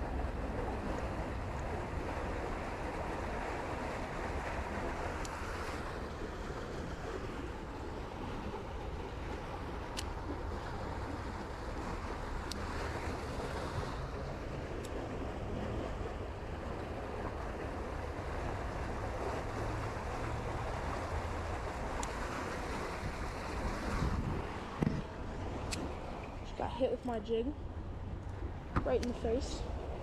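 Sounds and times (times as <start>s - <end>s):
creek water rushing: 0.0s - 30.0s
wind on microphone: 9.6s - 26.5s.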